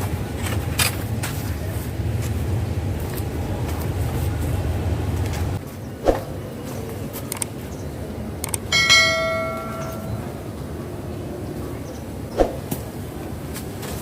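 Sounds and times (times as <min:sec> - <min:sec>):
metallic clang ringing: 0:08.6 - 0:10.4.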